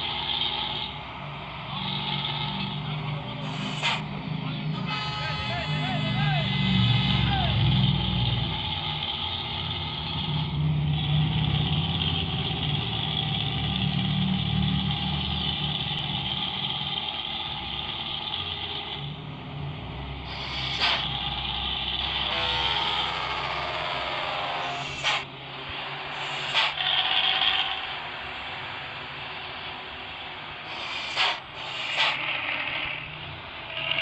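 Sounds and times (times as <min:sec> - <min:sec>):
bus diesel engine running: 0:00.0 - 0:34.0
brief hiss: 0:30.7 - 0:32.2.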